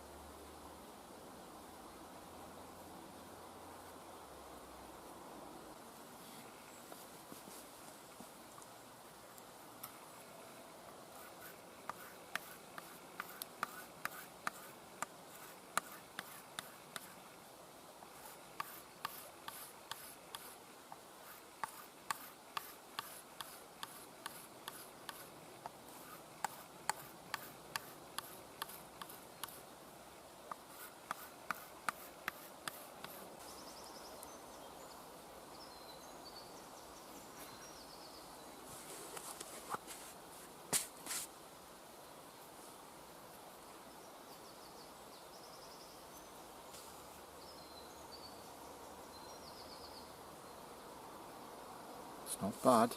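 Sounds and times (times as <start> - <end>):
knife blade stropping on wood: 11.2 - 17.2, 18.1 - 20.6, 21.2 - 29.6, 30.5 - 33.3.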